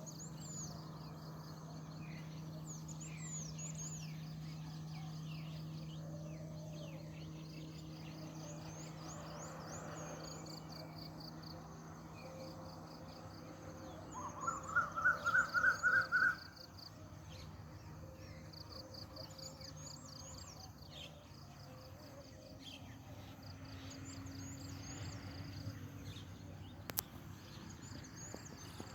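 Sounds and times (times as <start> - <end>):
birds chirping: 0.0 - 21.7, 22.4 - 28.9
faint insects: 0.0 - 28.9
low steady hum: 0.0 - 28.9
loud rising bird call: 14.1 - 16.5.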